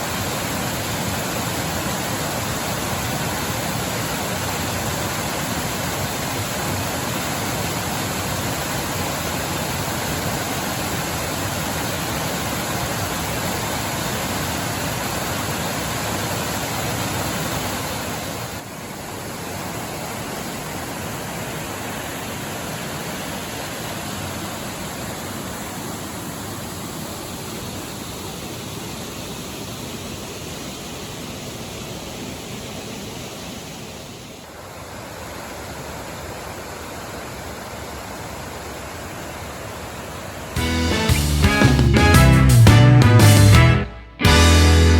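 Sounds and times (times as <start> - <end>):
waterfall rushing: 0.0 - 42.6.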